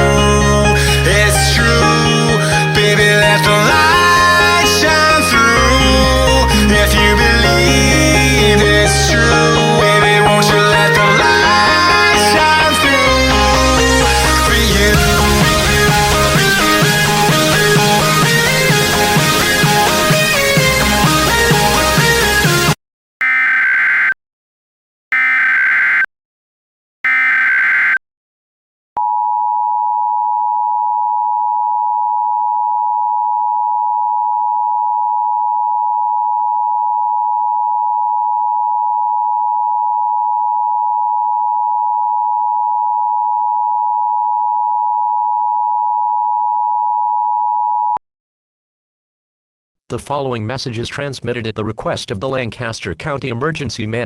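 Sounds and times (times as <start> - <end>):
two-tone attention signal: 23.2 - 24.2, 25.2 - 26.1, 27.1 - 28.0.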